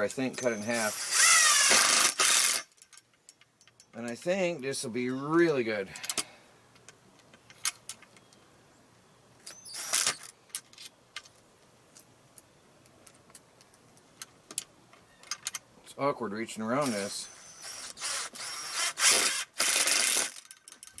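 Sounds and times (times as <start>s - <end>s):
metallic clicks and clinks: 2.4s - 4.4s, 5.4s - 8.3s, 20.2s - 21.0s
metal hardware clattering: 2.6s - 4.6s, 5.2s - 8.2s, 20.4s - 21.0s.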